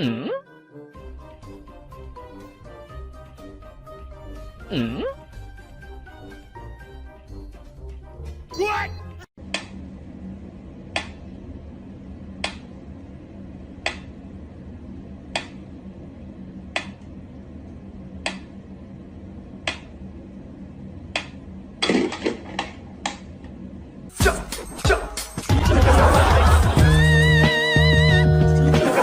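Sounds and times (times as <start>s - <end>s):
faint steady hum: 9.4s - 24.1s.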